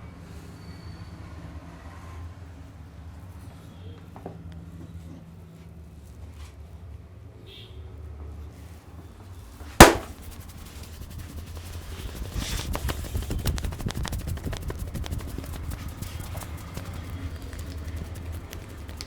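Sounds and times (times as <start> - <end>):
loud bang: 9.8 - 10.3.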